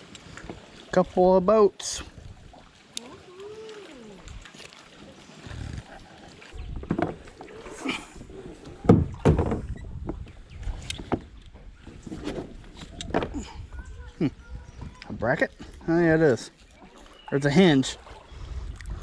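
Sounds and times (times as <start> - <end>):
wind buffeting microphone: 2.0 - 2.6, 5.4 - 15.9, 18.0 - 19.0
knocks and clunks: 6.7 - 7.4, 8.8 - 10.3, 10.9 - 11.4.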